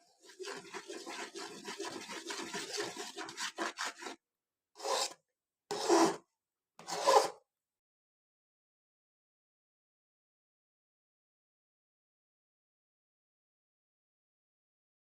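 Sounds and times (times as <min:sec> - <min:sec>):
scratchy scraping strokes: 0:00.0 - 0:04.2, 0:04.8 - 0:06.2, 0:06.8 - 0:07.4.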